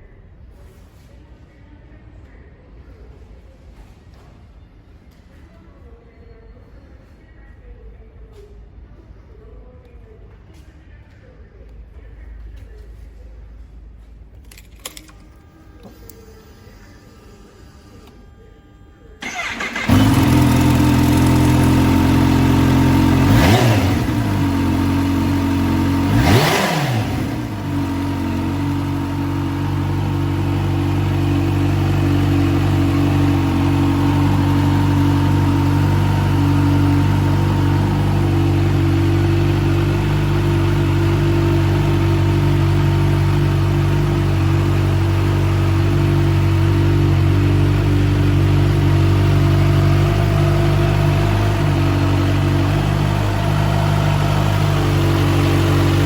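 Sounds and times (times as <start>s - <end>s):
motorcycle engine idling and revving: 19.2s - 56.0s.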